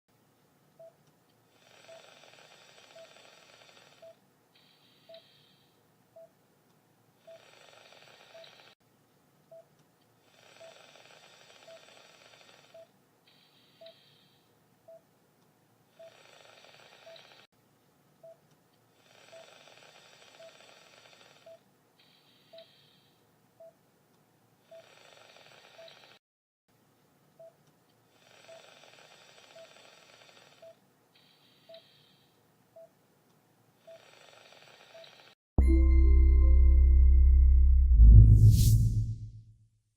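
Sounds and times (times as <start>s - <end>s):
short even beep: 35.6s - 39.1s.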